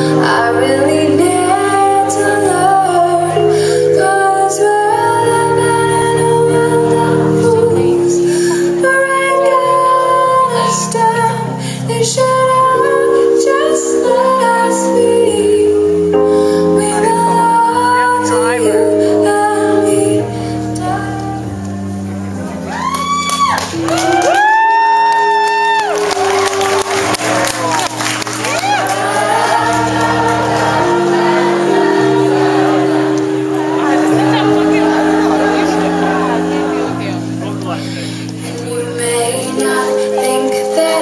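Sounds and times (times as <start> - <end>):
live pop band playing: 0.0 - 41.0.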